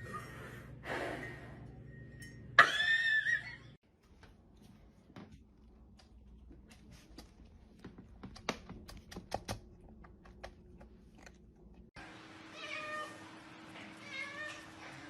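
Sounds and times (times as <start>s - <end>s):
sharp clicks and taps: 8.2s - 11.3s.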